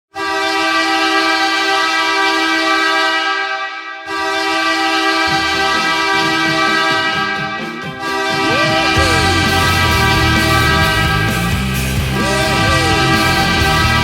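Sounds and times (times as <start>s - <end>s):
goal horn blasting: 0.1s - 11.6s
music: 4.8s - 14.0s.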